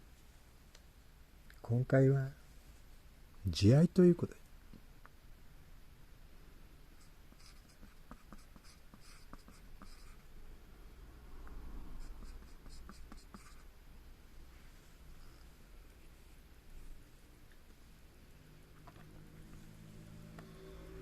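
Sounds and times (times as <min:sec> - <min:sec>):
pen scratching on paper: 0:07.0 - 0:10.3, 0:12.0 - 0:13.7
soft low rumble: 0:10.4 - 0:12.3.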